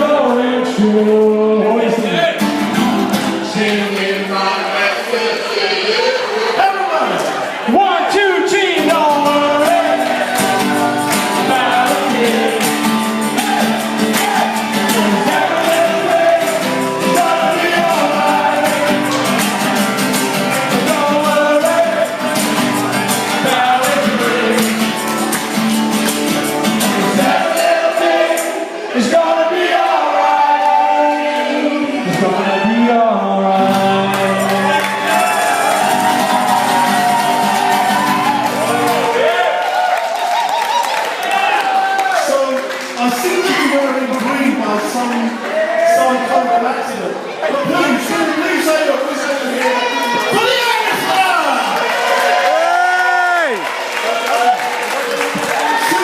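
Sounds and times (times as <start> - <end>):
live band playing: 2.0 - 3.8, 8.6 - 28.9, 33.6 - 39.2
person singing: 8.5 - 25.6, 26.8 - 39.1.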